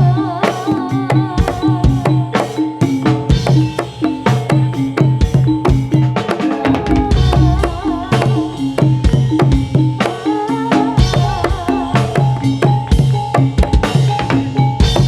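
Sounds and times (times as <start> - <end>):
drum and percussion strikes: 0.0 - 15.0
wavering high melody: 0.0 - 15.0
sustained pitched tones: 6.4 - 9.5.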